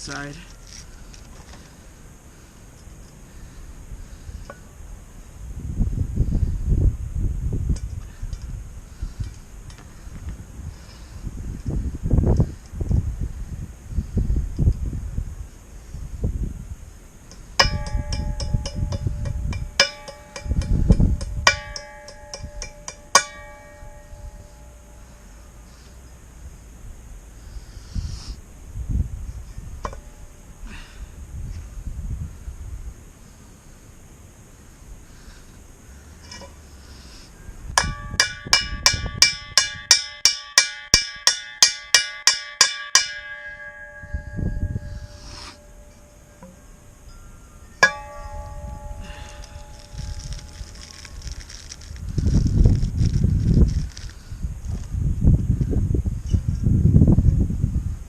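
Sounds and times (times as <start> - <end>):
hammer tapping steel: 17.3 - 24.4, 37.8 - 46.6, 47.8 - 50.1
steel ringing: 17.3 - 25.7, 37.8 - 51.9.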